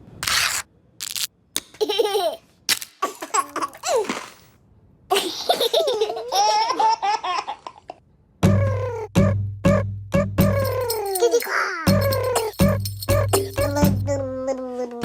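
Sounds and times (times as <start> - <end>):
high-pitched laughter: 10.4 - 15.0.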